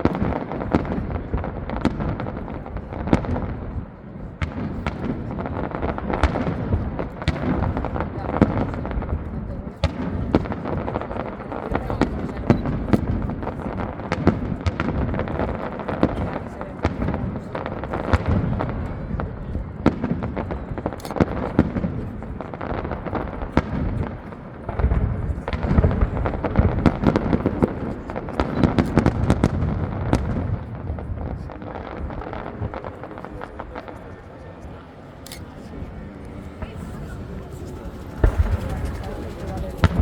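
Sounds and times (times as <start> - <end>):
fireworks bangs and crackles: 0.0 - 40.0
low fireworks booms: 0.0 - 40.0.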